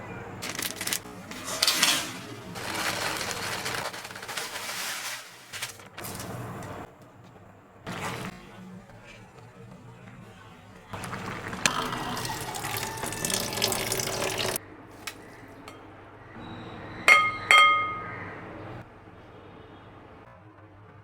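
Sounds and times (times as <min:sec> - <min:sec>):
water running from tap: 0:11.0 - 0:14.6
kitchenware clinking: 0:17.1 - 0:18.1.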